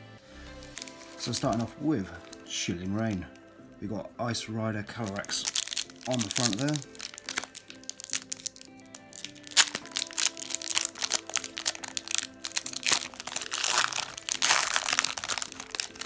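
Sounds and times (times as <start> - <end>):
background music: 0.0 - 16.0
foil wrapper crinkling: 0.5 - 3.3, 4.9 - 16.0
sharp crack: 4.9 - 16.0.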